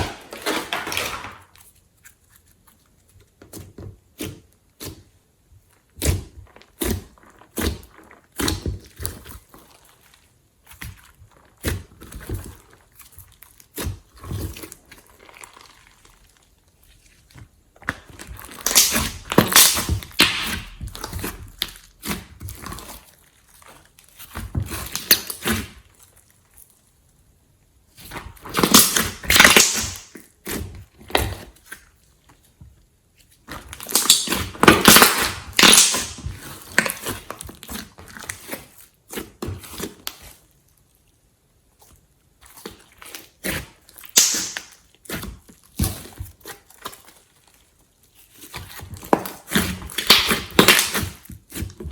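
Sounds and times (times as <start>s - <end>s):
wet slime squishing: 3.0s - 26.9s, 27.9s - 32.4s, 33.3s - 51.9s
slime clicking and popping: 18.4s - 22.2s, 28.5s - 30.2s, 33.8s - 36.3s, 44.1s - 44.8s, 49.9s - 51.1s.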